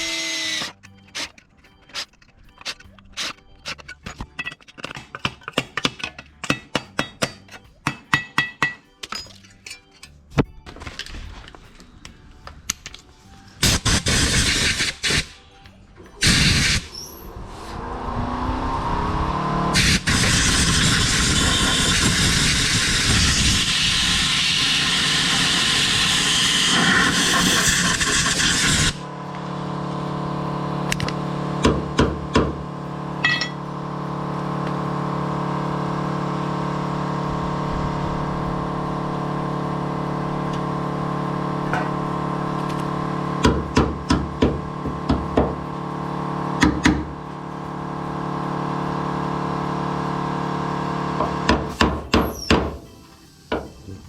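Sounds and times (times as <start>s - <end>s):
power tool running: 0.0s - 2.1s, 16.2s - 54.0s.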